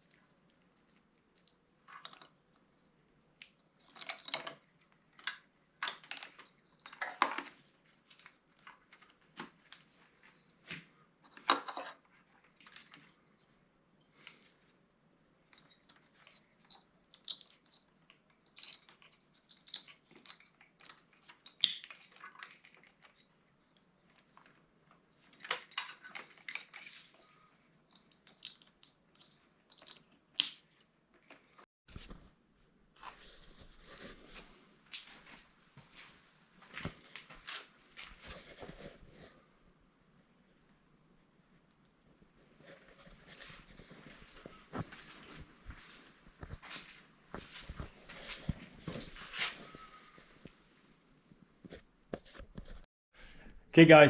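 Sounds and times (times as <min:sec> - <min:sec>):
small clicks and rustles: 0:00.0 - 0:02.7, 0:03.3 - 0:40.8.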